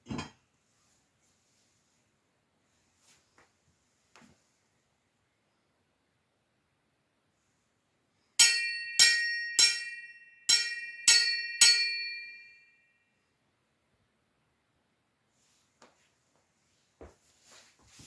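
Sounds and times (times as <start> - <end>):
metal ringing strikes: 8.4 - 12.8.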